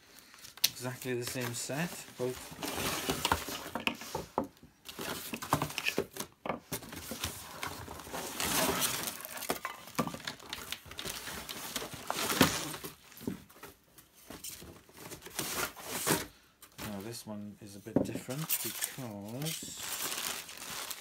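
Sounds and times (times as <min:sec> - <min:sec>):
packaging rustling: 0:04.9 - 0:17.0, 0:18.2 - 0:21.0.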